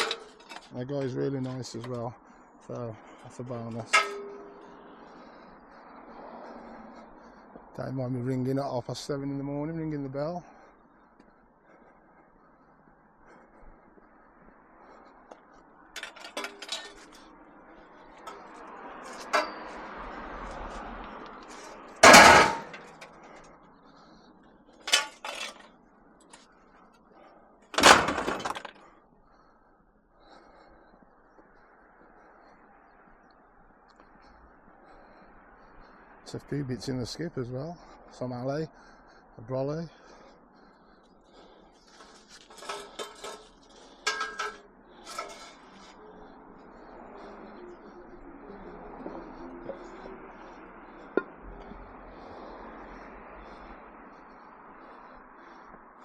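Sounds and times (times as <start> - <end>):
scrap metal clanging: 0.0 - 2.1, 3.5 - 4.8, 16.0 - 17.3, 18.2 - 20.8, 21.4 - 23.4, 24.8 - 25.7, 27.8 - 28.8, 41.9 - 46.1
loud metal crashes: 3.9 - 4.7, 22.0 - 23.0, 27.8 - 28.7.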